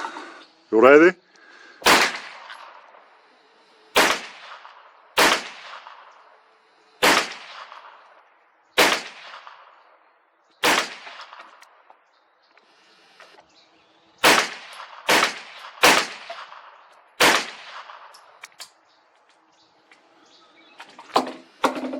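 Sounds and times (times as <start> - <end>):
rifle shots with echo: 1.8 - 3.1, 3.9 - 6.4, 7.0 - 11.8, 14.2 - 18.4.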